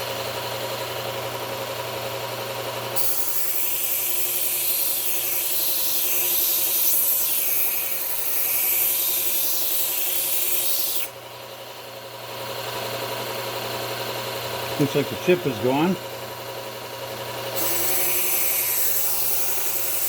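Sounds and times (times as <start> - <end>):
sharpener motor hum: 2.9 - 11.5, 16.7 - 20.0
knife grinding on sharpener: 3.0 - 11.1, 17.5 - 20.0.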